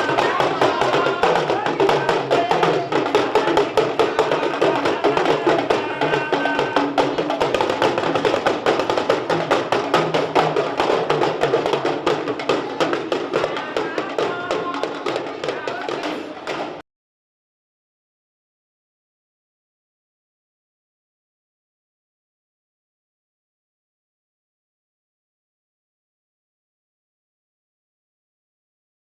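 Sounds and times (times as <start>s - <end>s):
fast hand percussion music: 0.0s - 16.8s
wood block strikes: 0.0s - 16.8s.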